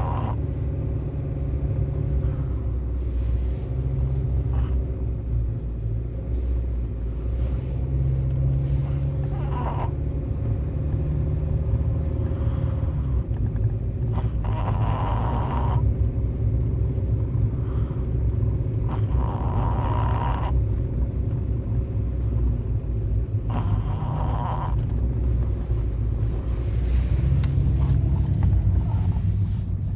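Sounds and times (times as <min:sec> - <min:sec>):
small dog snoring: 0:00.0 - 0:00.4, 0:03.6 - 0:05.0, 0:08.1 - 0:10.0, 0:11.6 - 0:13.4, 0:14.0 - 0:15.9, 0:17.4 - 0:20.7, 0:23.4 - 0:25.3
low rumble: 0:00.0 - 0:29.9.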